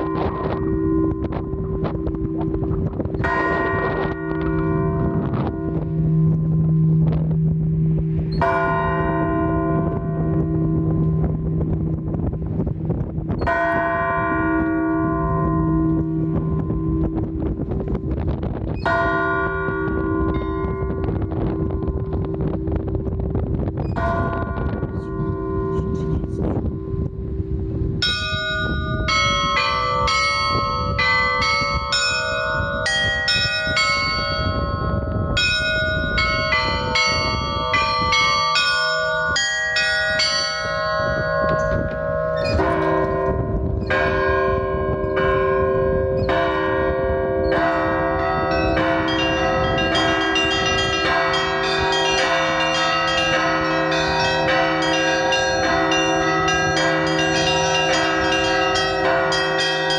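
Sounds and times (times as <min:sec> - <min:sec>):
deep bell humming: 0:00.0 - 0:59.9
small high bells pealing: 0:28.0 - 0:45.3, 0:47.5 - 0:59.9.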